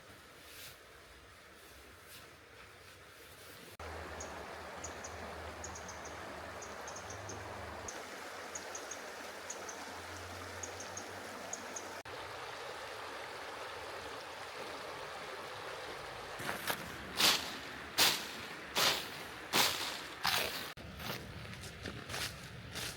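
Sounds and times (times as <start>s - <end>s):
mountain stream flowing: 3.7s - 21.8s
small bird chirping: 4.2s - 7.4s
loud crunches: 16.4s - 22.1s.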